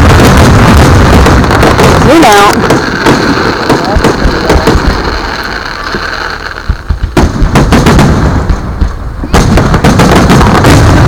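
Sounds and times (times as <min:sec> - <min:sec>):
fireworks bangs and booms: 0:00.0 - 0:11.0.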